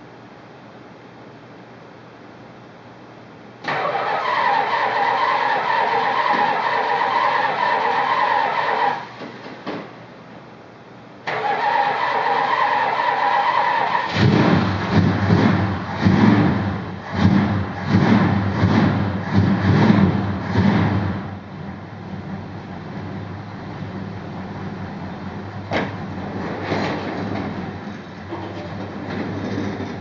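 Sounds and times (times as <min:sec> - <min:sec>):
starter motor cranking whine: 0:03.6 - 0:09.2, 0:11.3 - 0:16.1
engine firing unevenly: 0:03.6 - 0:10.1, 0:11.2 - 0:30.0.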